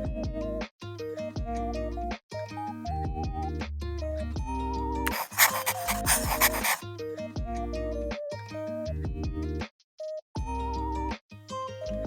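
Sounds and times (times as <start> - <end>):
pen scratching writing effect: 5.1 - 6.8.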